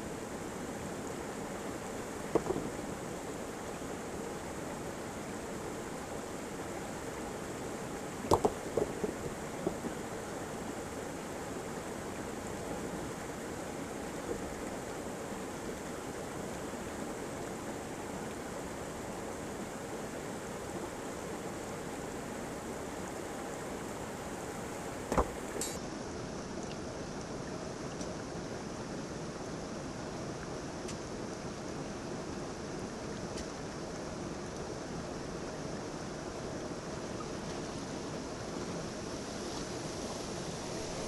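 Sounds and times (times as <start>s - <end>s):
sharp knocks: 2.3s - 2.7s, 8.3s - 9.1s.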